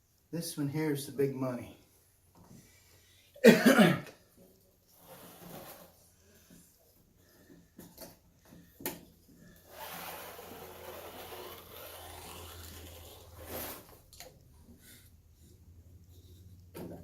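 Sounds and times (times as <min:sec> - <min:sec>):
plastic film swish: 0:09.7 - 0:14.2
plastic film sliding and rustling: 0:09.7 - 0:14.4.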